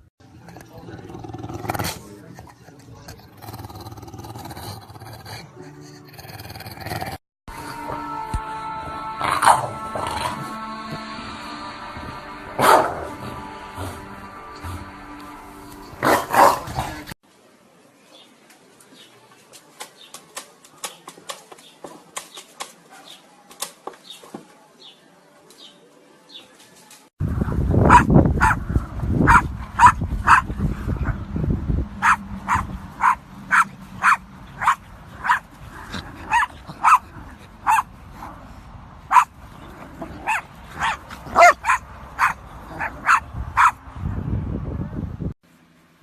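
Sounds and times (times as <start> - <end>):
dog barking: 12.6 - 13.1, 16.0 - 16.7, 27.9 - 28.6, 29.2 - 30.5, 32.0 - 35.5, 36.2 - 37.9, 39.1 - 39.3, 40.2 - 43.8
low rumbling background: 28.6 - 35.8.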